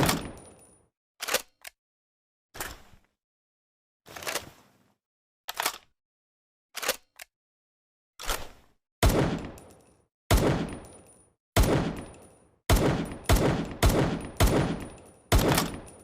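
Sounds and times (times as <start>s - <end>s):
pistol gunshot bangs: 9.0s - 9.6s, 10.3s - 10.8s, 11.6s - 12.1s, 12.7s - 16.0s.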